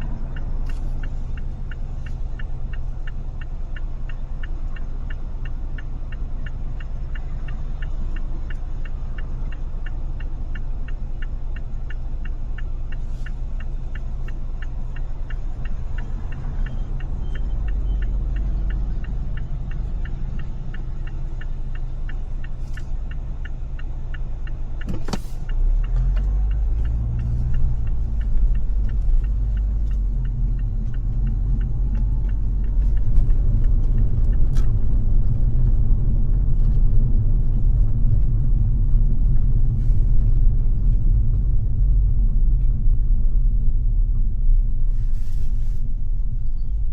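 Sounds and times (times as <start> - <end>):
car engine and road rumble: 0.0 - 46.9
turn signal ticking: 0.0 - 46.9
sharp click: 24.8 - 26.3.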